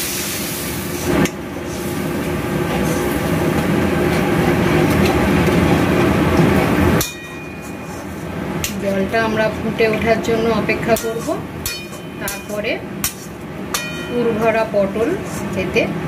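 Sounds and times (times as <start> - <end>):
bubbling and sizzling rumble: 0.0 - 7.0.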